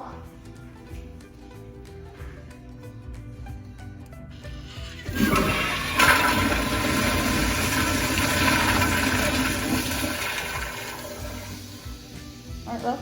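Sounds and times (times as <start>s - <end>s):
toilet flushing: 4.4s - 12.4s.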